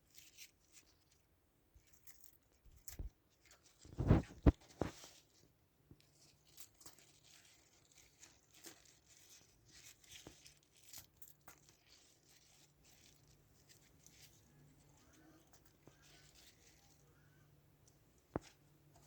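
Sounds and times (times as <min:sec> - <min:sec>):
paper or plastic rustling: 0:01.9 - 0:05.4, 0:06.0 - 0:17.4
faint low hum: 0:11.8 - 0:19.0.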